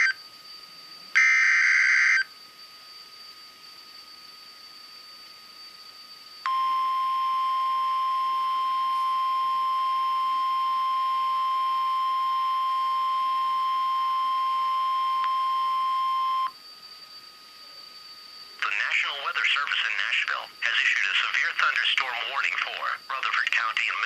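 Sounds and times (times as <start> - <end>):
faint high whine: 0.0 - 24.0
steady alarm tone: 0.0 - 24.0.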